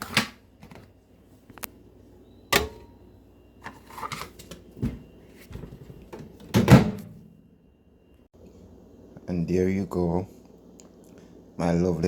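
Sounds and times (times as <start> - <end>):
microwave oven door clicks: 2.5 - 2.9.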